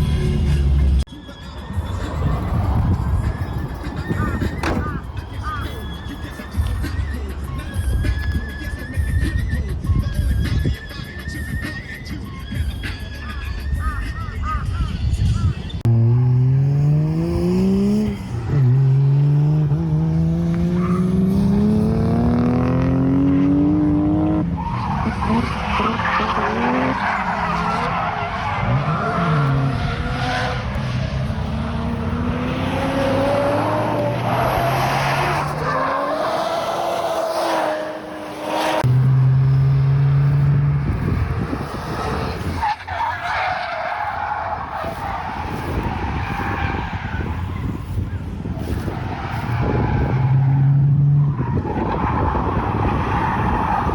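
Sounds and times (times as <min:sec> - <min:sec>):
tyres squealing and skidding: 0:00.0 - 0:53.9
car engine revving: 0:15.8 - 0:53.9.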